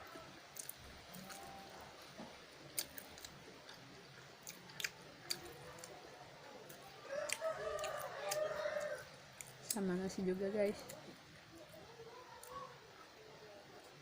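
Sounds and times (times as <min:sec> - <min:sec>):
close chewing of noodles: 0:00.0 - 0:09.8.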